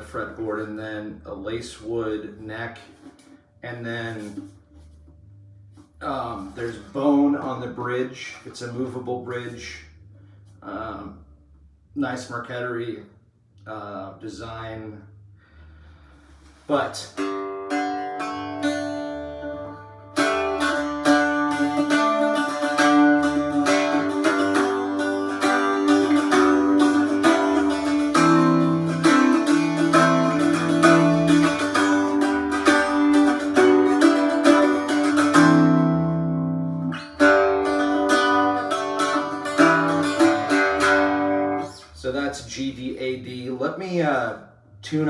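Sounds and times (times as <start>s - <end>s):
bouzouki picked and strummed: 16.7s - 42.0s.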